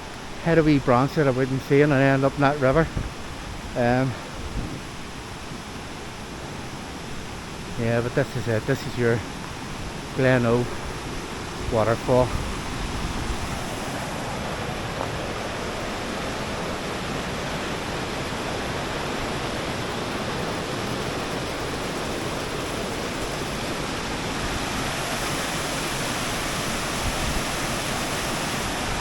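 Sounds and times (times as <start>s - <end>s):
waterfall crashing into pool: 9.2s - 29.0s.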